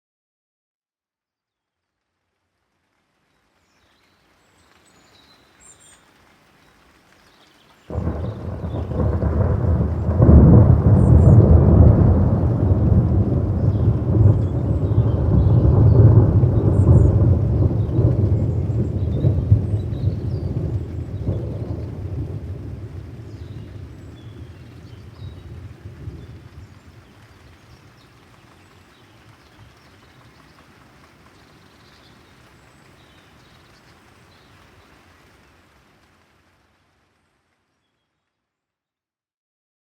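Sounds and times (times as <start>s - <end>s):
steady rain: 1.7s - 38.5s
low roll of thunder: 7.9s - 27.4s.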